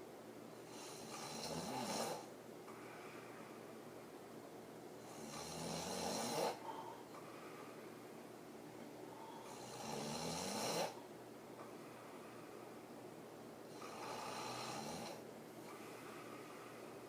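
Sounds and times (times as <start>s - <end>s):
quiet breathing: 0.5s - 4.3s, 4.9s - 17.0s
woman snoring: 0.7s - 2.3s, 5.0s - 6.6s, 9.4s - 11.0s, 13.7s - 15.9s.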